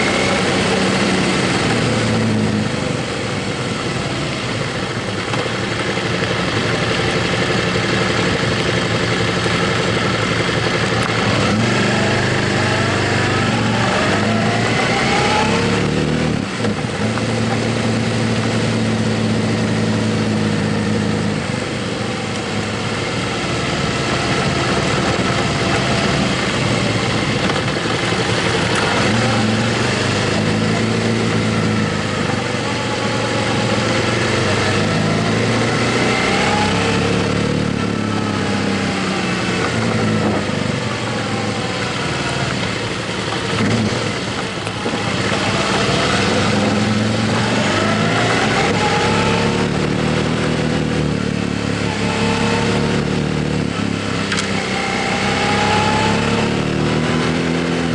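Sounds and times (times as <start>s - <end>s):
motorcycle engine running: 0.0s - 57.9s.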